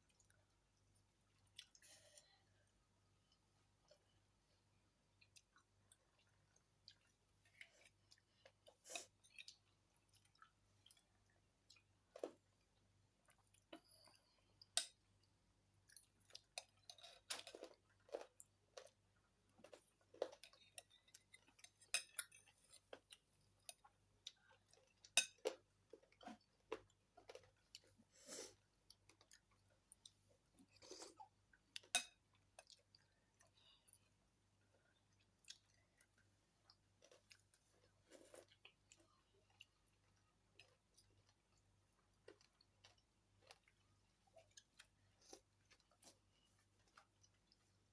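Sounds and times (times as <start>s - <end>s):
person chewing: 15.9s - 19.0s, 19.6s - 47.7s.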